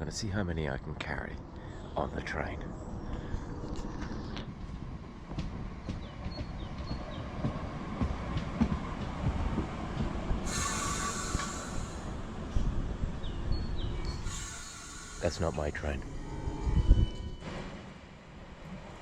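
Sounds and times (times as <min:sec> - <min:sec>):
train rumbling: 0:00.0 - 0:19.0
wheels clattering over rails: 0:03.9 - 0:12.5
loud hiss: 0:10.5 - 0:12.2, 0:14.1 - 0:15.8.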